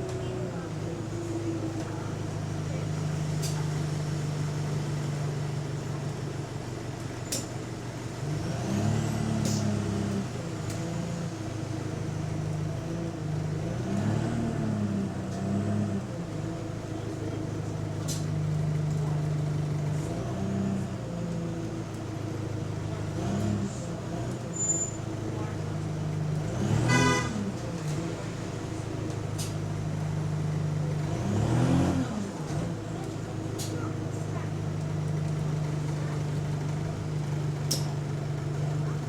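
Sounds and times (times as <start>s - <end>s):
bus engine with exhaust leak: 0.0s - 39.0s.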